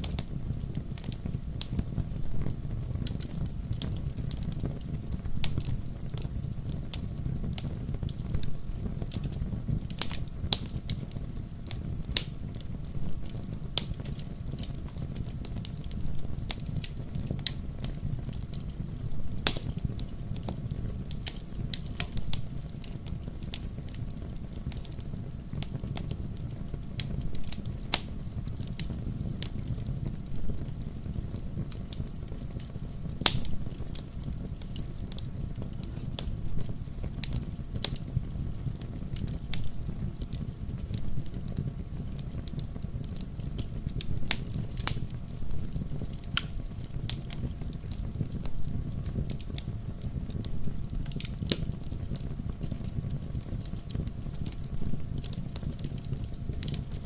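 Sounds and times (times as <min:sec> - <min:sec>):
bonfire crackling and popping: 0:00.0 - 0:57.0.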